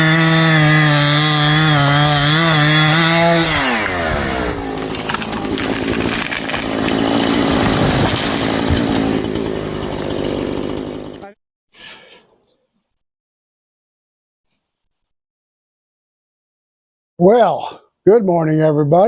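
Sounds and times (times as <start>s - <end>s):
chainsaw running: 0.0s - 11.4s.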